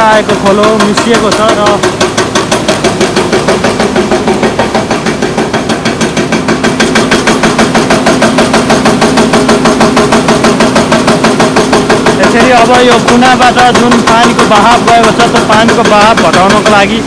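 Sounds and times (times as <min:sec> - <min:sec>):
machine pulsing rapidly: 0:00.0 - 0:17.0
steady machine hum: 0:00.0 - 0:17.0.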